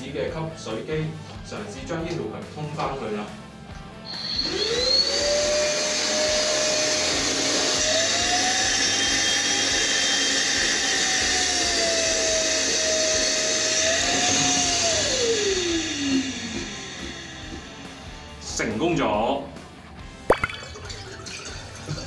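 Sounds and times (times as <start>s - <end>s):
vacuum motor whine: 4.1s - 18.6s.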